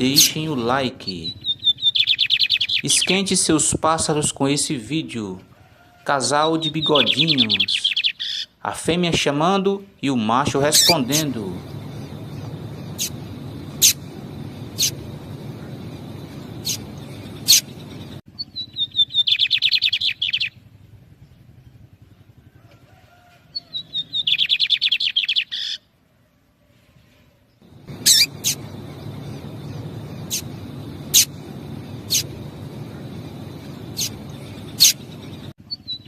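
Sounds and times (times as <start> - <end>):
bird trilled song: 0.0 - 3.2, 6.3 - 8.5, 10.6 - 22.0, 23.5 - 25.8, 27.6 - 36.0
bird call notes: 10.7 - 20.5, 27.7 - 36.0.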